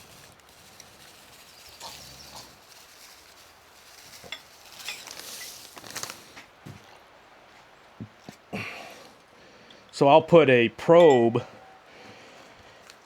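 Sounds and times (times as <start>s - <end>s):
rustling with light clicks: 0.0s - 8.4s.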